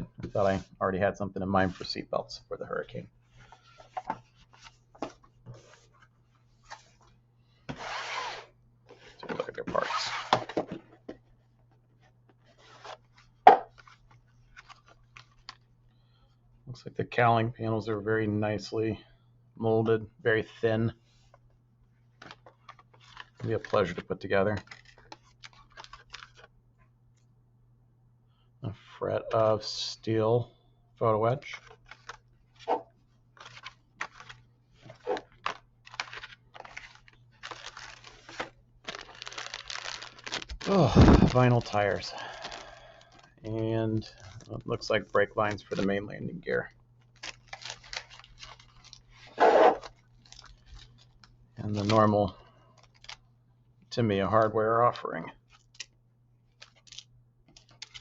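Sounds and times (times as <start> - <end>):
faint steady hum: 0.0 - 58.0
plastic rustling: 22.1 - 26.5, 31.5 - 46.0, 47.0 - 53.2, 55.5 - 58.0
plastic bags crinkling: 33.4 - 44.7, 47.0 - 52.1, 52.8 - 53.2, 56.5 - 58.0.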